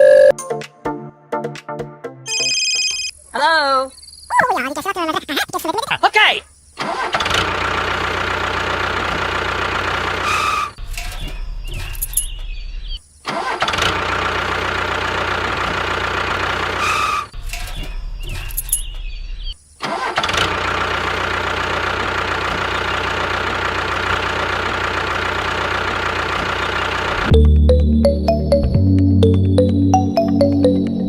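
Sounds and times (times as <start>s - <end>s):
small engine starting and running: 6.8s - 12.3s, 13.3s - 17.7s, 19.8s - 27.5s.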